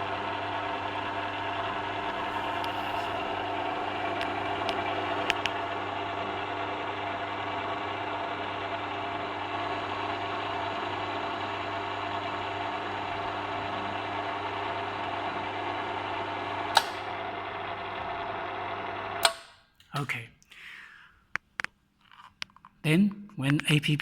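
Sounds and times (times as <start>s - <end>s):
gate opener motors humming: 0.0s - 19.6s
sharp click: 16.7s - 17.0s, 19.2s - 20.1s.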